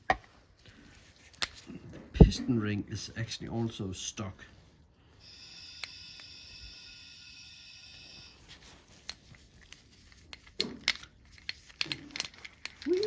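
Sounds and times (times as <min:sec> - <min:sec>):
metal parts clicking and knocking: 0:08.9 - 0:13.0.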